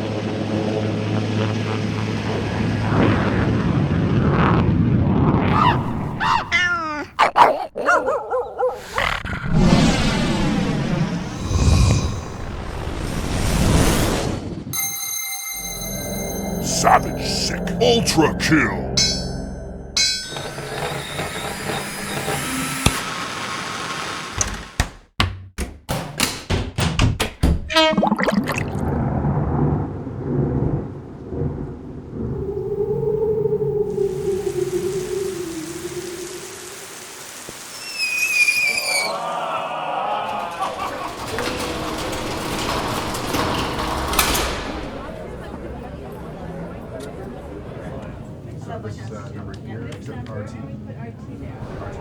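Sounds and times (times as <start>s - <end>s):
dog whining and yipping: 5.5s - 9.0s
rapid sharp knocks: 24.6s - 27.7s.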